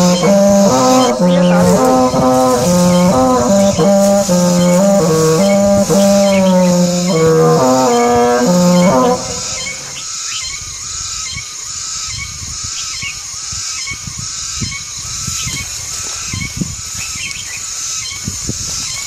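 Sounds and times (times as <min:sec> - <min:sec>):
low thumps: 0:00.0 - 0:10.0
high-pitched drone: 0:00.0 - 0:10.6.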